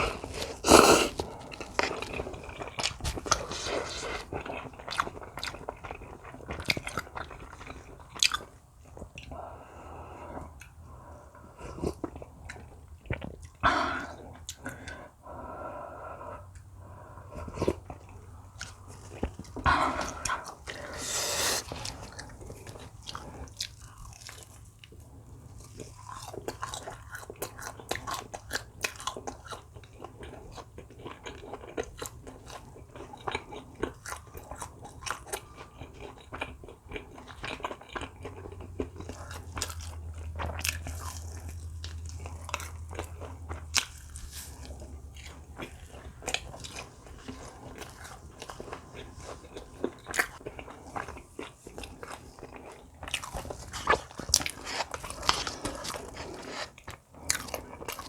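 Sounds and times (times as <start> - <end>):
person chewing food: 0.0 - 15.2, 16.3 - 58.0.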